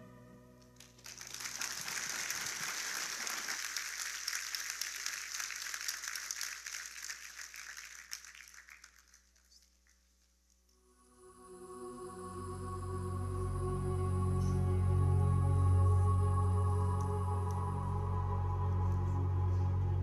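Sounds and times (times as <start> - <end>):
music: 0.0 - 1.5, 10.8 - 20.0
audience applauding: 0.8 - 10.0.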